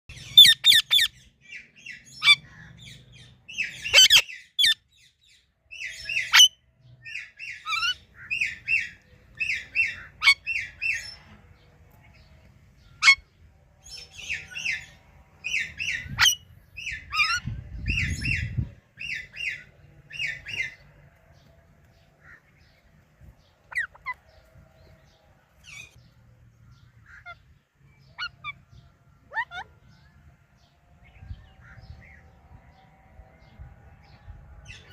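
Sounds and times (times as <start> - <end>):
parrot chirping: 0.2 - 1.1, 3.6 - 4.8, 23.7 - 24.2, 29.3 - 29.7.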